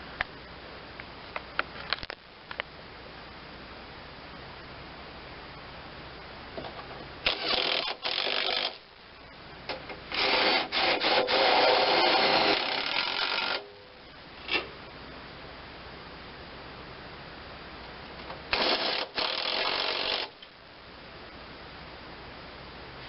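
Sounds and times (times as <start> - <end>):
handheld power tool running: 7.2 - 8.8, 10.1 - 13.6, 18.5 - 20.3.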